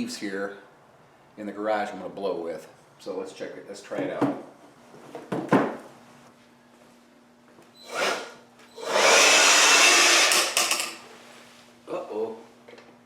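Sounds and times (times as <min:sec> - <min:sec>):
cordless blower rushing air: 0:07.9 - 0:10.9.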